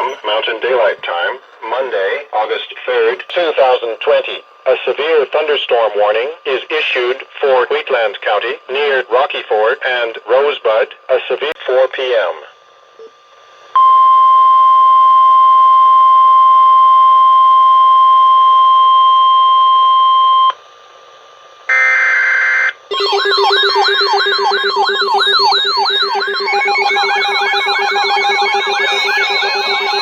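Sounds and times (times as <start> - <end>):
harsh buzzing tones: 21.7 - 30.0
siren-like wailing tones: 21.7 - 30.0
high alert beep: 22.9 - 30.0
steady drones: 22.9 - 30.0.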